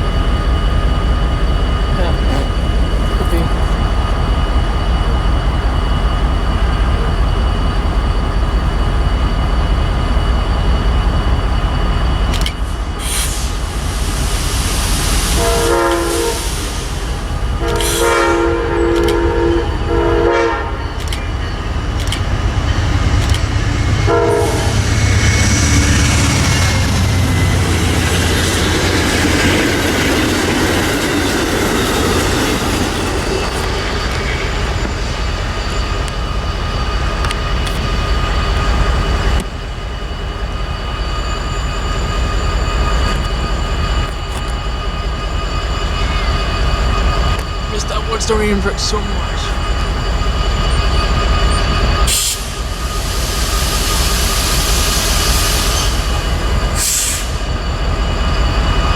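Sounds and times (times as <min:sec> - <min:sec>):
rolling train cars clattering: 0:00.0 - 0:58.9
train air horn blasts: 0:15.3 - 0:16.8, 0:17.6 - 0:20.8, 0:24.0 - 0:24.8.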